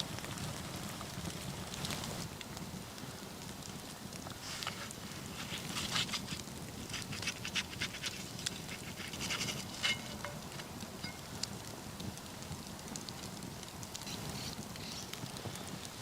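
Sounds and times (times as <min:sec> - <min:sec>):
crackling and clicking: 0:03.4 - 0:16.0.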